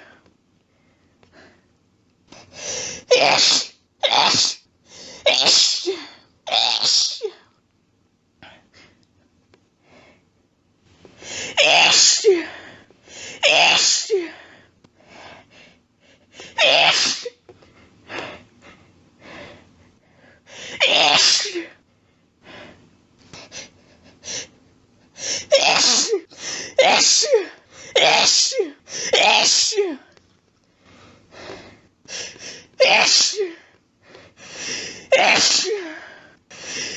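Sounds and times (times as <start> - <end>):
person sneezing: 3.0 - 4.6, 5.2 - 7.4, 11.3 - 12.6, 13.4 - 14.4, 16.4 - 17.4, 20.6 - 21.8, 25.2 - 30.1, 32.5 - 33.6, 35.1 - 36.0.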